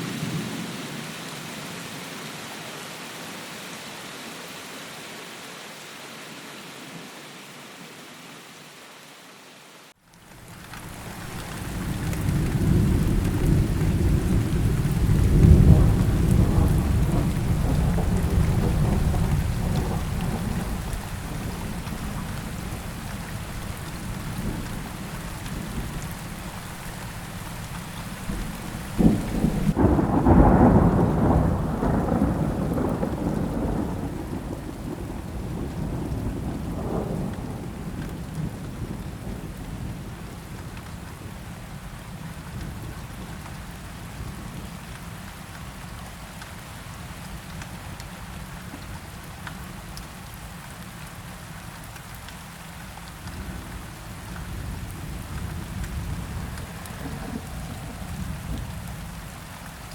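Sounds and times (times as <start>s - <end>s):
steady rain: 0.0s - 59.9s
rolling thunder: 10.8s - 40.2s, 53.4s - 59.7s
sharp thunder crack: 11.2s - 35.0s.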